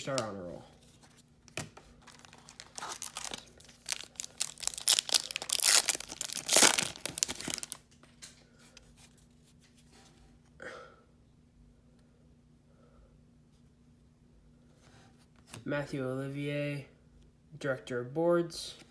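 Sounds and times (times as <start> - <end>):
card pack wrapper tearing and crinkling: 1.5 - 7.9.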